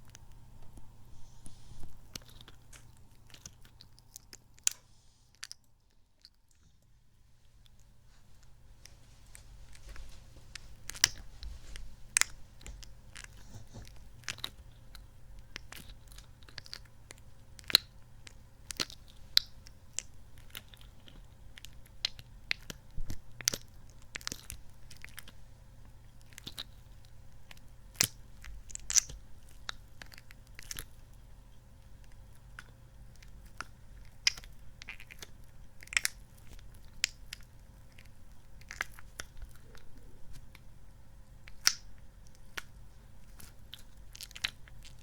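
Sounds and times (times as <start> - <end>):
sticky toy squelching and clicking: 9.7 - 25.4, 26.1 - 31.2, 31.8 - 40.7, 41.3 - 45.0
sharp snaps: 41.5 - 41.9.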